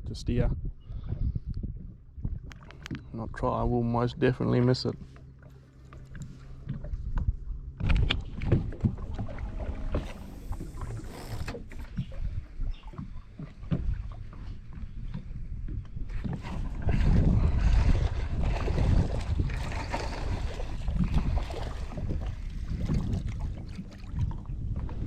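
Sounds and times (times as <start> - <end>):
wind buffeting microphone: 0.0 - 4.1, 6.1 - 25.0
water slapping boat hull: 1.0 - 25.0
electric motor hum: 9.2 - 11.8.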